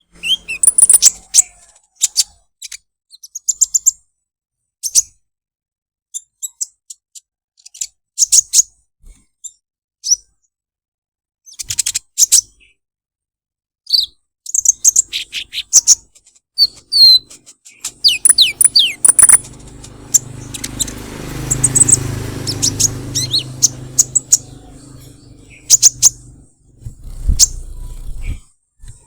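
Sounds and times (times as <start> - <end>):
sunbird high-pitched chirps and trills: 0.1 - 4.0, 13.9 - 28.4.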